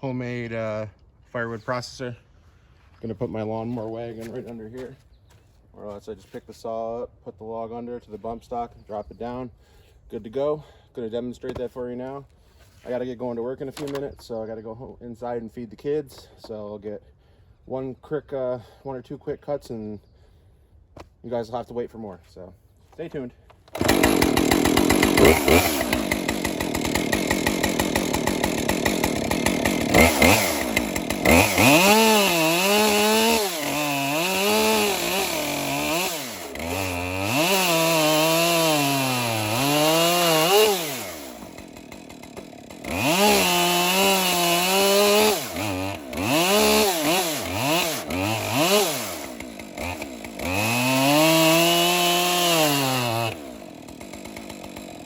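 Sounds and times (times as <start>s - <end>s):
chainsaw cutting logs: 13.6s - 14.1s, 23.1s - 55.0s
chainsaw idling: 23.7s - 55.0s.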